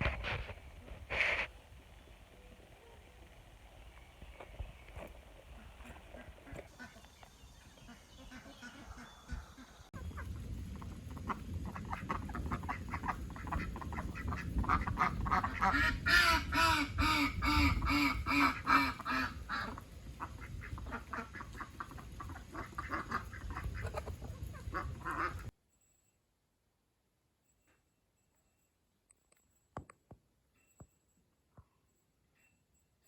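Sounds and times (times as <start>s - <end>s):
ducks quacking: 5.4s - 25.5s.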